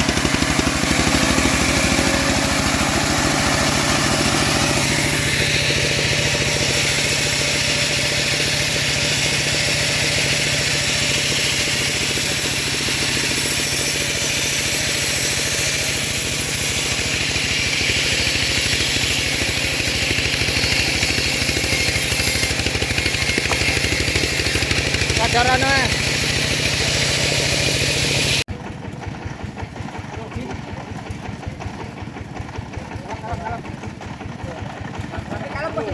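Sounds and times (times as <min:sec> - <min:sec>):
bandsaw mill engine running: 0:00.0 - 0:35.9.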